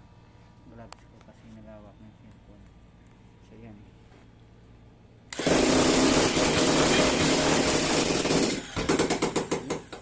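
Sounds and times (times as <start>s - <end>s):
electric jackhammer running: 5.3s - 10.0s.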